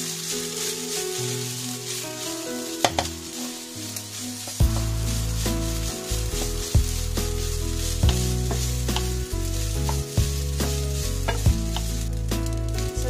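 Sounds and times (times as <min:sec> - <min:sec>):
background music: 0:00.0 - 0:13.0
rice sizzling in oil: 0:00.0 - 0:13.0
spatula knocking and scraping pan: 0:04.4 - 0:12.0.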